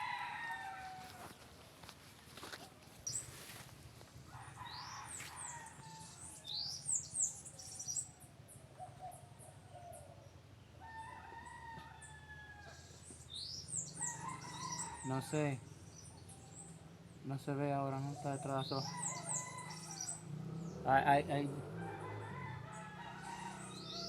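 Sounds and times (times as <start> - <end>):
rooster crowing: 0.0 - 1.4, 4.3 - 6.6, 10.8 - 12.9, 13.9 - 15.4, 18.8 - 20.3, 21.7 - 24.0
birds chirping: 0.0 - 24.0.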